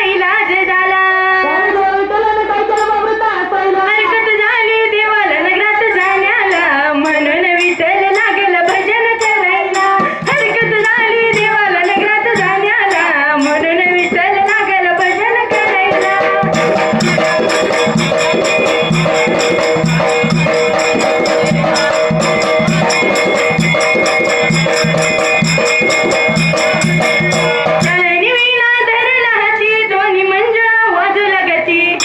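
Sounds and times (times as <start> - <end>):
woman singing: 0.0 - 20.1, 27.8 - 32.0
fast percussion strokes: 5.5 - 28.4
held instrumental notes: 5.7 - 28.2
low drum beats: 6.5 - 28.1.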